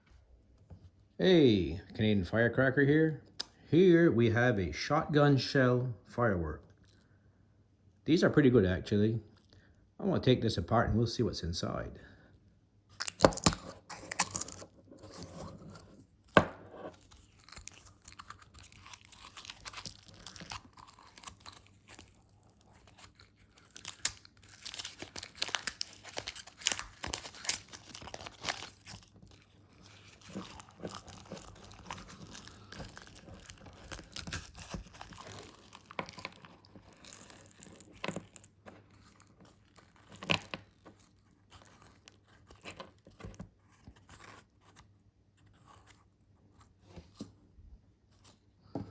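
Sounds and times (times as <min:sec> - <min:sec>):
paper and cardboard tearing: 0:13.0 - 0:16.0, 0:16.8 - 0:44.8.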